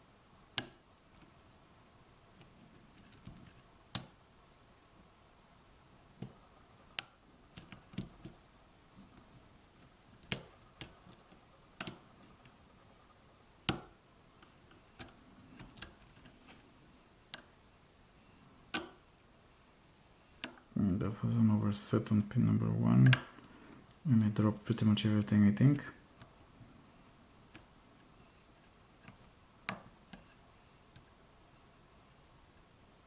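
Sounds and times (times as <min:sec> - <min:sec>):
lock pins clicking: 0:10.2 - 0:12.6.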